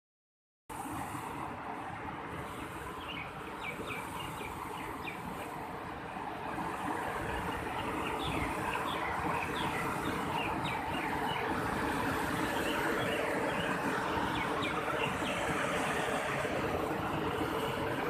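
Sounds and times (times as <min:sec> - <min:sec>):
river water rushing: 0:00.7 - 0:18.0
small birds chirping: 0:07.6 - 0:11.5.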